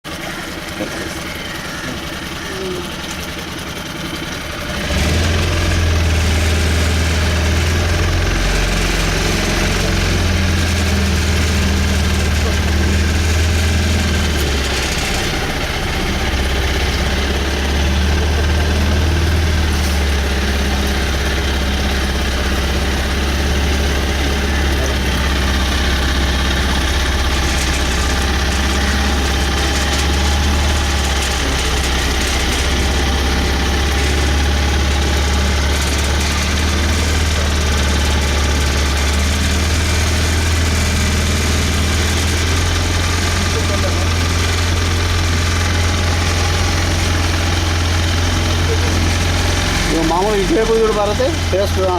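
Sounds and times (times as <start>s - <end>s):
boat engine humming: 0.0s - 51.9s.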